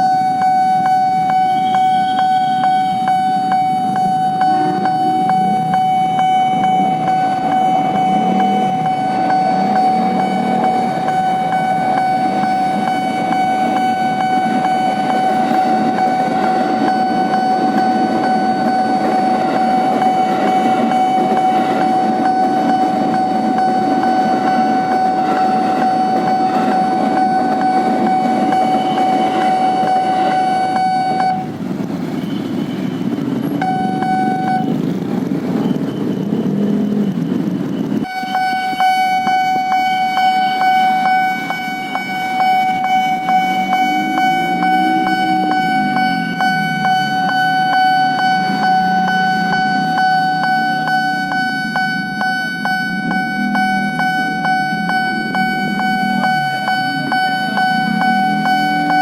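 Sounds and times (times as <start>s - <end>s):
electric trains passing: 0.0s - 59.0s
level-crossing warning bell: 0.0s - 59.0s
train horn: 38.0s - 46.8s.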